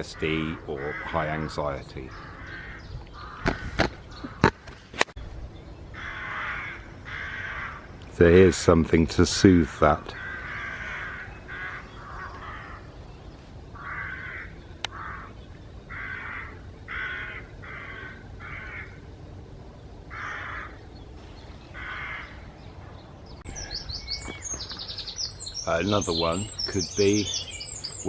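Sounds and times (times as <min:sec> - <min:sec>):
crows cawing: 0:00.0 - 0:04.7, 0:05.9 - 0:08.0, 0:09.8 - 0:13.0, 0:13.7 - 0:19.2, 0:20.0 - 0:28.0
small bird singing: 0:01.3 - 0:04.5, 0:10.1 - 0:28.0.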